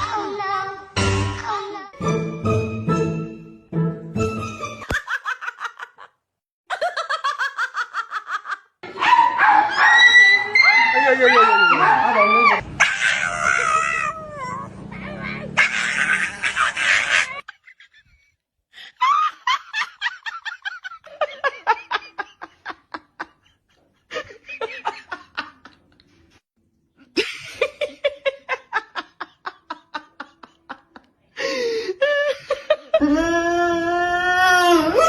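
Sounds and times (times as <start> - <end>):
hearty laughter: 4.9 - 8.8, 15.7 - 26.2, 27.1 - 33.0.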